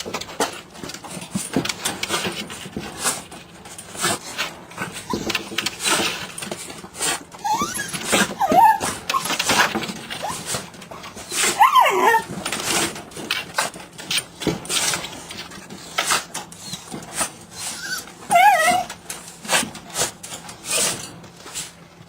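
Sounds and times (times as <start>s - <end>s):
dog whining: 4.8s - 6.0s, 7.0s - 12.4s, 16.6s - 19.0s.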